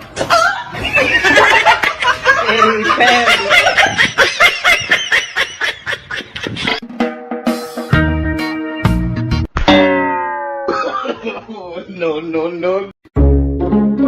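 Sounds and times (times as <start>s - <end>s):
people laughing hard: 0.2s - 6.8s, 10.7s - 11.6s.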